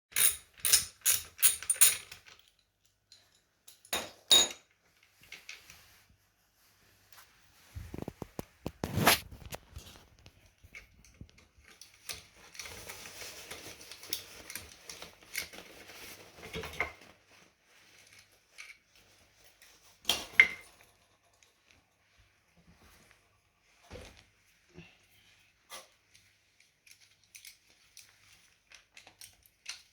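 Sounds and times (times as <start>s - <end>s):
rustling handling noise: 4.7s - 20.0s.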